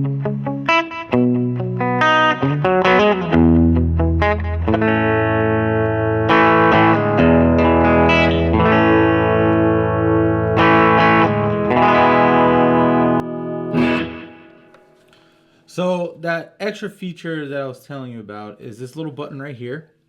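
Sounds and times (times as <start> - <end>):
electric guitar with echo: 0.0 - 15.6.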